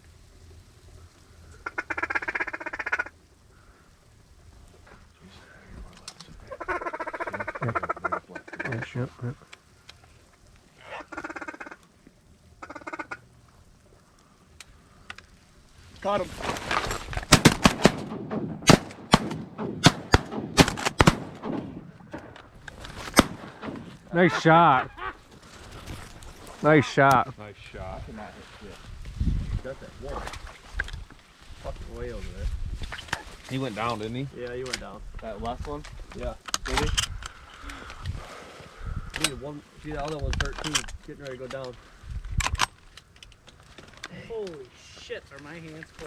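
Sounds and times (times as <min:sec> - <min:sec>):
duck quacking: 0:06.5 - 0:09.0
low wind rumble: 0:12.2 - 0:33.5, 0:34.2 - 0:43.0
shotgun shots: 0:17.3 - 0:24.1.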